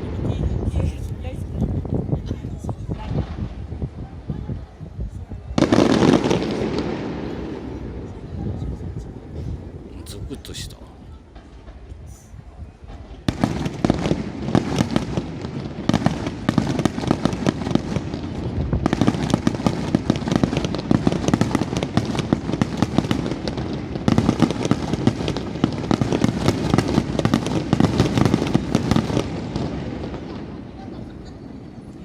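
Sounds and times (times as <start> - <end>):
fireworks crackling: 5.6 - 8.1, 13.0 - 32.0.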